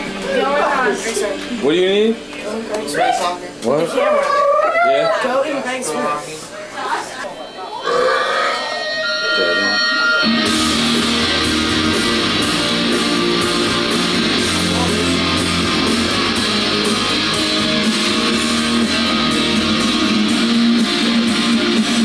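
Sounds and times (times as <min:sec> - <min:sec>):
guitar-driven music with beat: 0:08.7 - 0:22.0.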